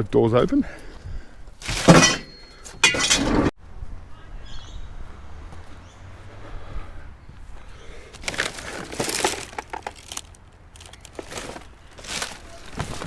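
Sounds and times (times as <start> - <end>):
rubbish crunching and rustling: 1.6 - 3.5, 8.1 - 13.0.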